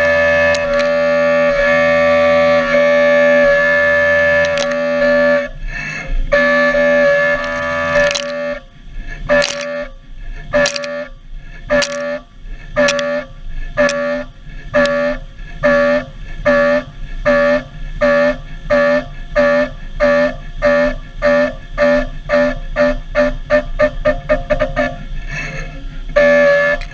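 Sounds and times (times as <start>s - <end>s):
milling cutter whining: 0.0s - 5.5s, 6.6s - 8.6s
sharp click: 10.6s - 11.0s.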